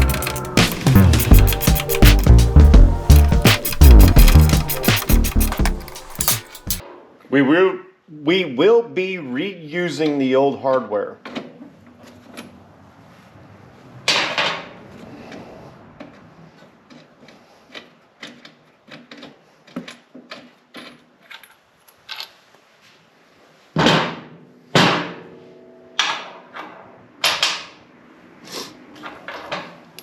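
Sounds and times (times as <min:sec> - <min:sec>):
metal parts clanking: 0:00.0 - 0:06.8
tools clicking and knocking: 0:00.0 - 0:06.8.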